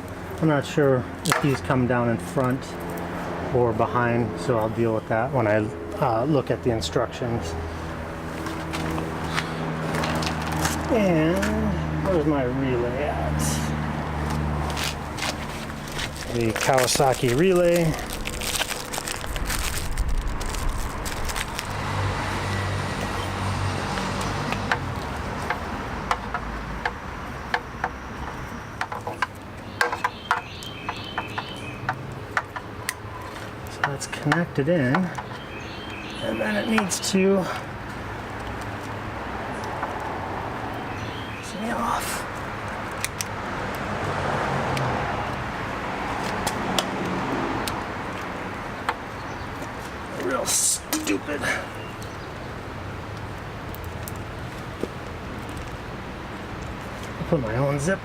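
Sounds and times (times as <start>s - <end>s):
vehicle passing by: 1.0s - 28.5s, 37.2s - 51.8s.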